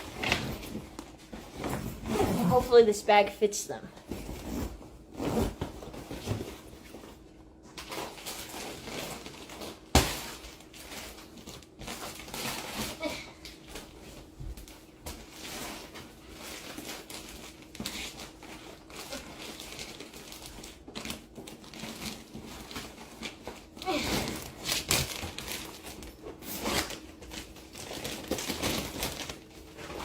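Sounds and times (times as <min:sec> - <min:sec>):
plastic bags crinkling: 0:06.7 - 0:30.0.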